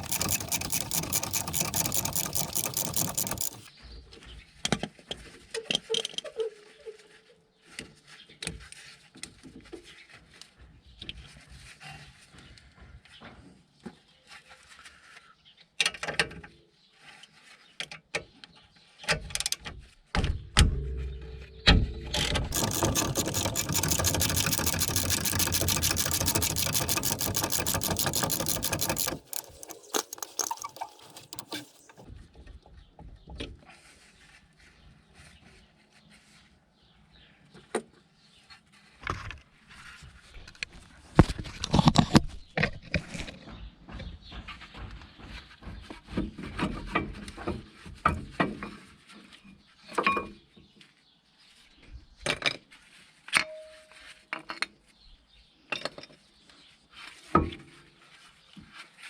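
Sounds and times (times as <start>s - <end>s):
metal tools clinking: 0.0s - 3.7s, 22.2s - 32.0s
power tool rattling: 0.0s - 3.7s, 22.2s - 32.0s.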